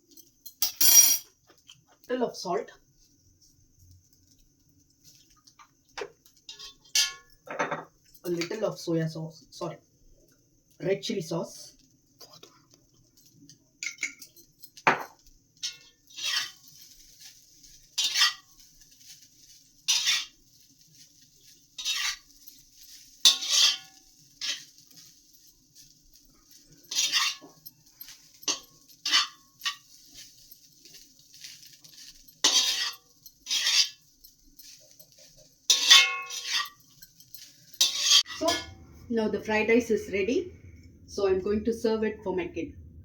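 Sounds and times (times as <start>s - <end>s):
metal spatula scraping a wok: 6.4s - 7.4s, 15.6s - 39.0s.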